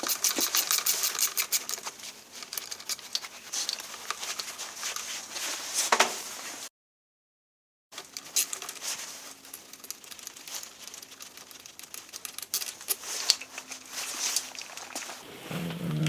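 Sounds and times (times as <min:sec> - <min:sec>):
sharp small clicks and taps: 0:00.0 - 0:04.5, 0:09.4 - 0:13.7
rustling and crinkling: 0:00.0 - 0:06.7, 0:08.0 - 0:16.0.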